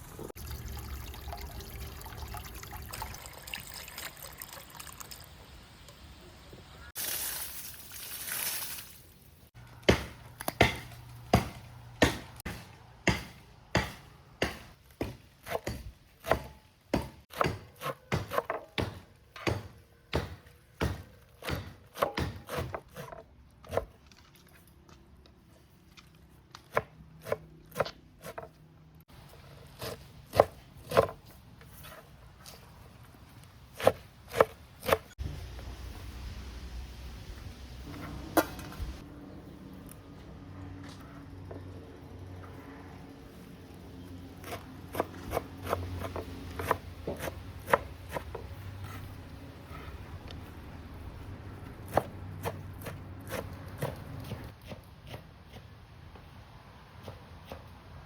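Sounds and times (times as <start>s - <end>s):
knife chopping on cutting board: 9.9s - 23.9s.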